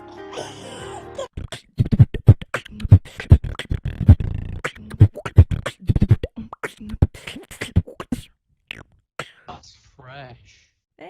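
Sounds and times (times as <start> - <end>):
person beatboxing: 1.4 - 9.5.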